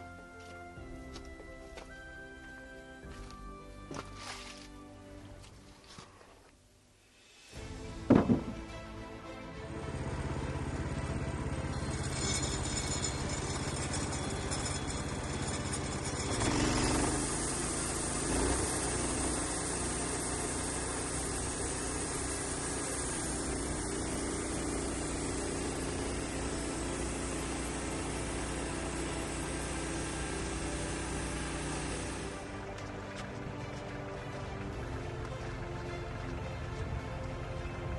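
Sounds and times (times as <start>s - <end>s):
sawmill engine running: 0.0s - 6.0s, 7.4s - 37.9s
saw blade hissing through wood: 11.9s - 32.4s.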